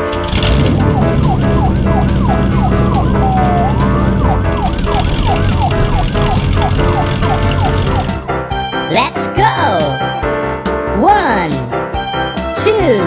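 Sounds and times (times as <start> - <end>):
police siren yelping: 0.6 - 8.2.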